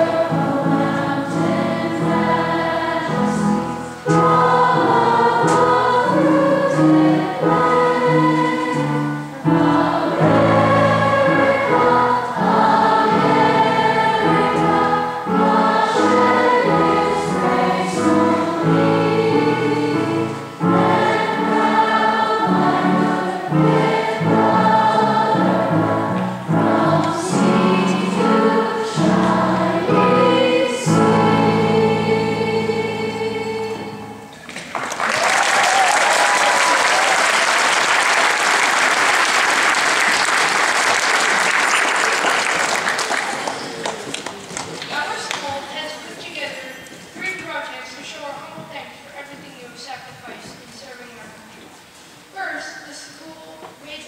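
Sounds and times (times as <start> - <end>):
choir singing: 0.0 - 34.4.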